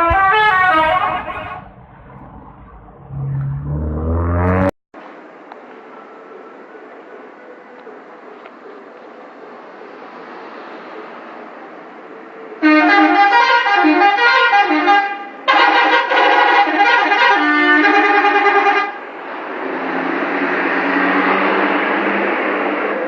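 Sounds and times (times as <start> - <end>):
musical bus horn: 0.0 - 1.7, 12.6 - 19.0
bus road and engine noise: 0.0 - 23.0.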